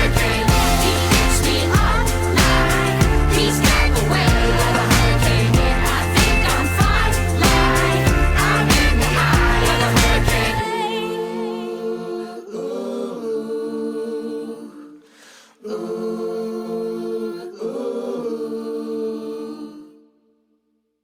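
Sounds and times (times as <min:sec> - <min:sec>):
layered female vocal harmonies: 0:00.0 - 0:20.0.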